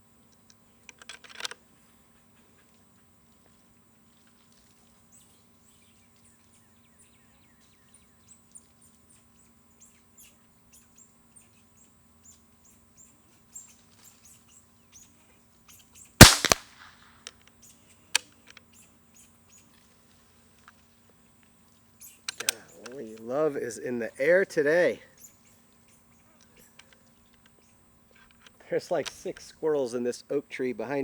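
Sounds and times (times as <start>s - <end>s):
small clicks: 16.2s - 16.9s
air rifle shot: 16.2s - 17.0s.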